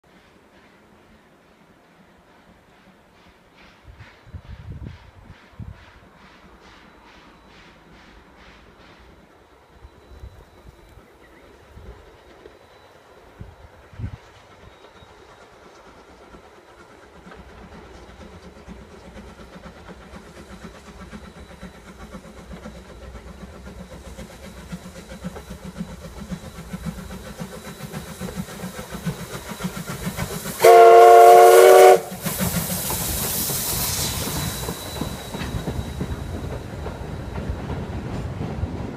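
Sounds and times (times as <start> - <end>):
steam locomotive running: 0.0 - 38.9
train passing rush: 0.0 - 38.9
steam whistle blast: 30.4 - 32.3.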